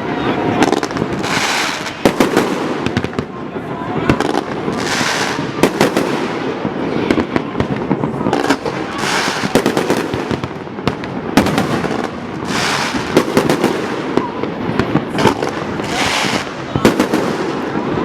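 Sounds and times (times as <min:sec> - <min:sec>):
fireworks bangs: 0:00.0 - 0:18.0
fireworks crackling hiss: 0:00.0 - 0:18.0.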